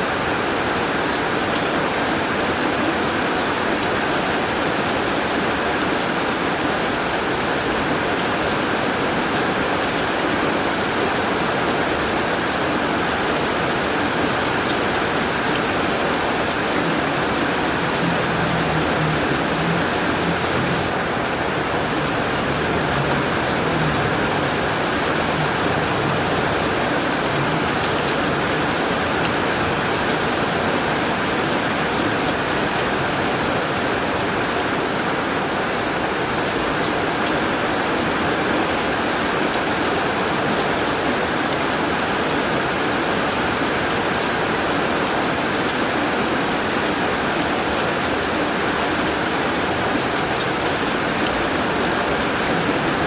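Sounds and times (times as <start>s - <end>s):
rain on a tin roof: 0.0s - 53.0s.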